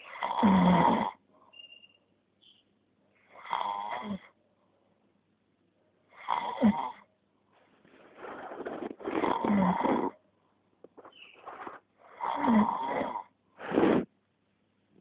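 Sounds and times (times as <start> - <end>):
capybara snoring: 0.0 - 1.2, 3.3 - 4.3, 6.1 - 7.0, 8.1 - 10.2, 12.0 - 14.1.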